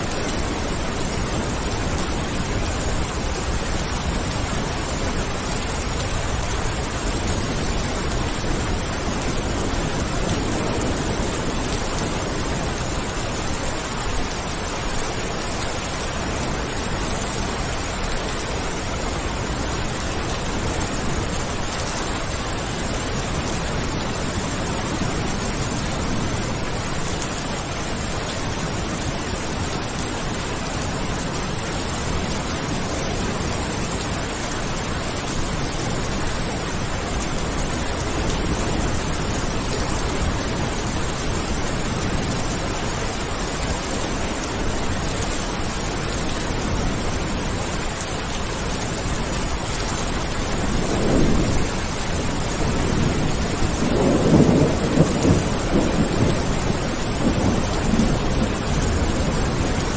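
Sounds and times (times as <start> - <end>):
steady rain hiss: 0.0 - 59.9
thunder rumbling: 50.2 - 59.9.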